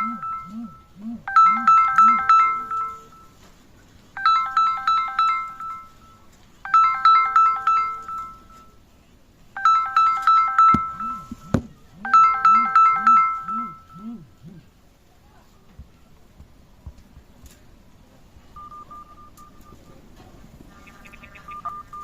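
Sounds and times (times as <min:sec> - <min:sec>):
phone ringtone chiming notes: 0:00.0 - 0:03.6, 0:04.2 - 0:08.8, 0:09.6 - 0:14.2, 0:21.4 - 0:22.0.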